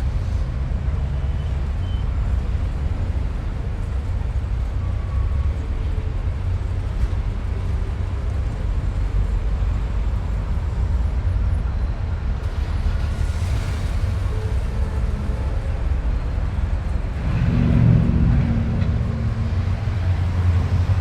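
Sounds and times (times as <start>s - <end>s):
low rumble of engines and tyres: 0.0s - 21.0s
road noise hiss: 0.0s - 21.0s
vehicle passing: 17.0s - 21.0s.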